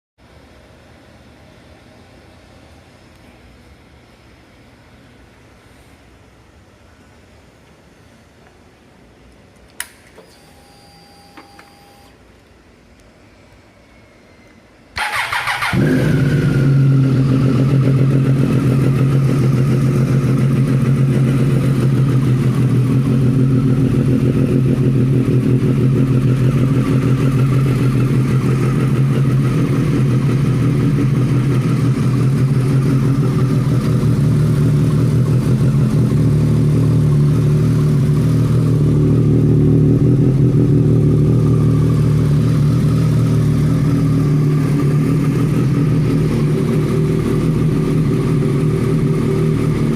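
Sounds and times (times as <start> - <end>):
motorcycle engine idling: 15.0 - 49.9.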